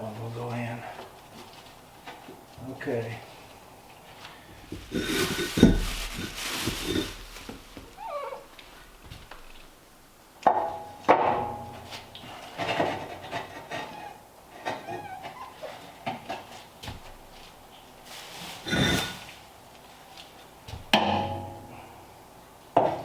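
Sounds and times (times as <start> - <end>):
bricks knocking and scraping: 4.7 - 7.9.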